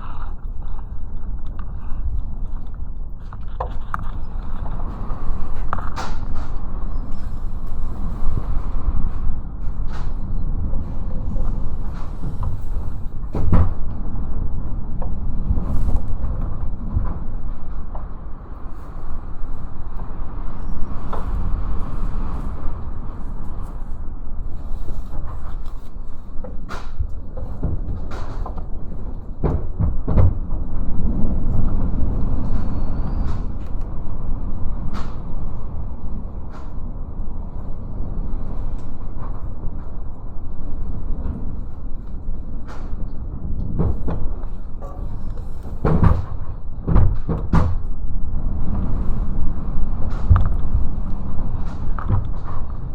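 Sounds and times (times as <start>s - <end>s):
strong wind buffeting microphone: 0.0s - 52.9s
knocks and rattles: 25.2s - 33.6s, 41.0s - 52.9s.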